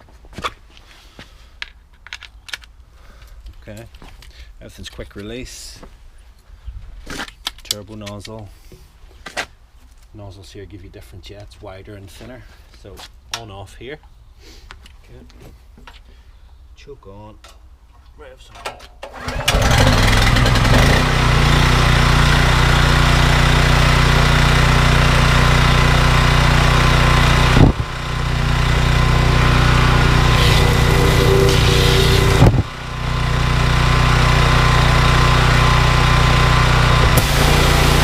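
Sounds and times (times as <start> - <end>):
petrol engine running: 19.2 - 38.0.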